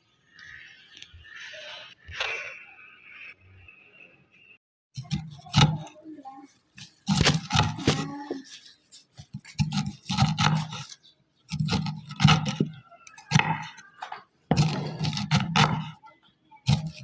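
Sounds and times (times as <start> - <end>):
person speaking: 5.0 - 17.0.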